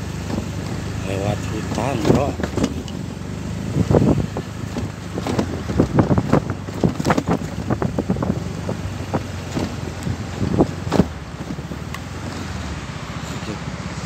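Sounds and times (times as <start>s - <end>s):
vehicle engine running: 0.0s - 14.0s
knocks and rattles: 1.6s - 3.1s, 3.9s - 12.5s
wind on the microphone: 3.6s - 12.6s.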